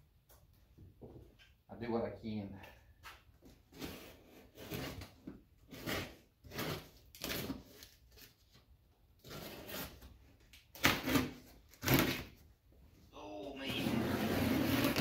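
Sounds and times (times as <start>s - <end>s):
cardboard box scraping: 13.7s - 15.0s.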